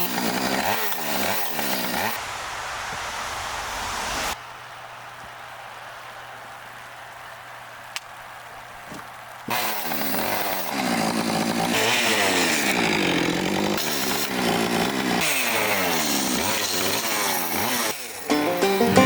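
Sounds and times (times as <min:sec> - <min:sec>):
chainsaw cutting wood: 0:00.0 - 0:02.2, 0:09.5 - 0:19.0
banjo music: 0:18.3 - 0:19.0.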